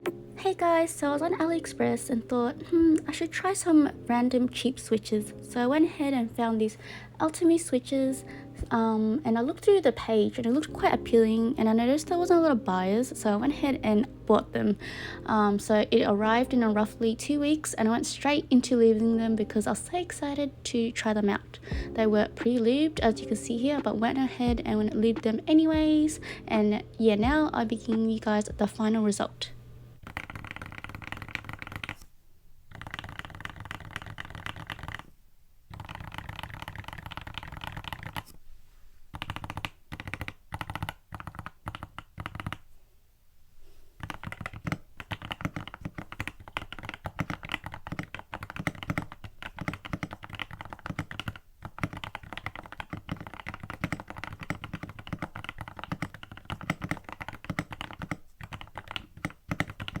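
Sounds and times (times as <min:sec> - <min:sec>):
mechanical keyboard typing: 0:30.0 - 0:32.1, 0:32.7 - 0:35.1, 0:35.7 - 0:38.4, 0:39.1 - 0:42.7, 0:44.0 - 1:00.0.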